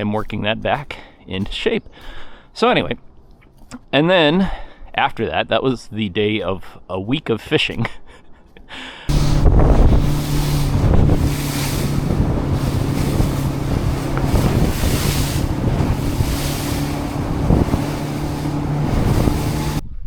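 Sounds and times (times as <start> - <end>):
boat motor humming: 9.1 - 19.8
wind buffeting microphone: 9.1 - 20.0.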